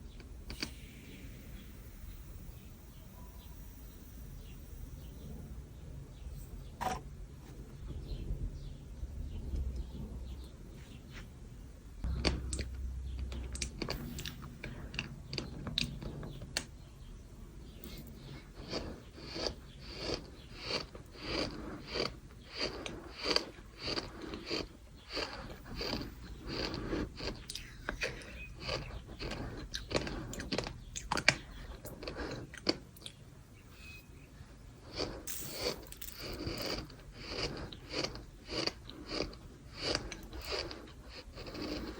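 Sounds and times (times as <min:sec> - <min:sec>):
gritty sand being chewed: 0:12.0 - 0:33.2, 0:34.8 - 0:41.9.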